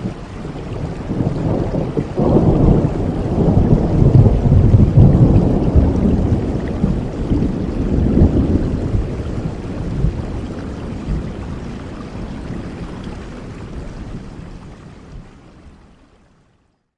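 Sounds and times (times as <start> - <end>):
rain falling: 0.0 - 16.5.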